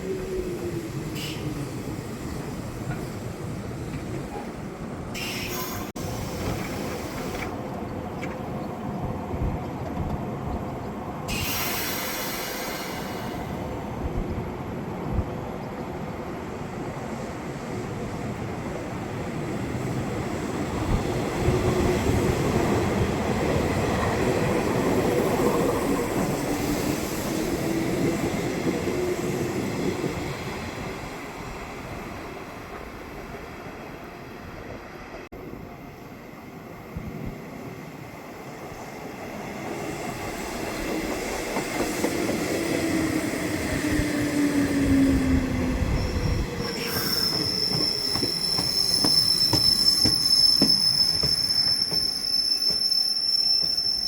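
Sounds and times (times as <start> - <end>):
electric train wheels rumbling: 39.3 - 54.0.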